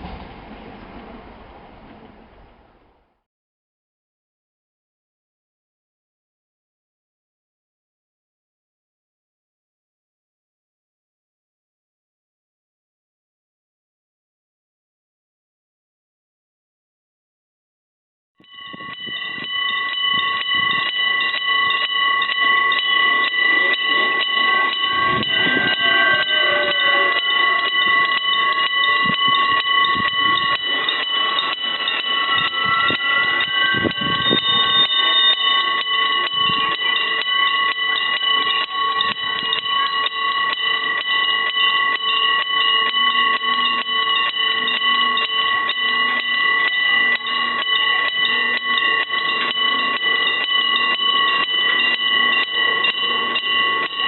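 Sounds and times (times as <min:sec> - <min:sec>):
low rumbling: 0:00.0 - 0:03.1
level crossing bell ringing: 0:18.4 - 0:54.0.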